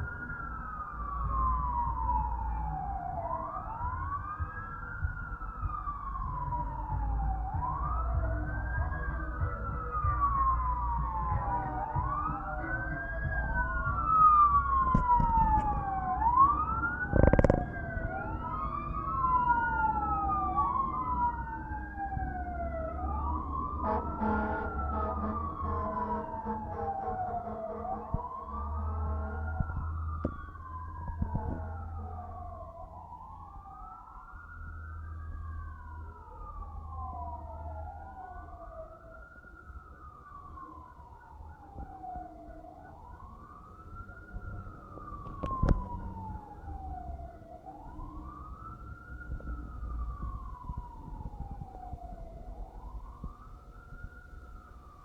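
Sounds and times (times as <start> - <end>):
fire truck sirens wailing: 0.0 - 55.0
low vehicle rumble: 0.0 - 55.0
short loud horn blast: 23.8 - 28.0.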